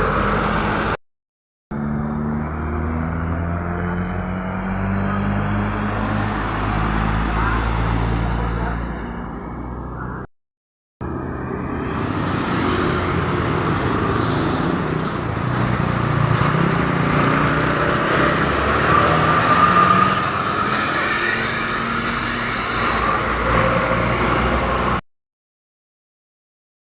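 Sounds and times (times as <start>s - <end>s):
heavy vehicle engines passing: 11.1s - 25.0s.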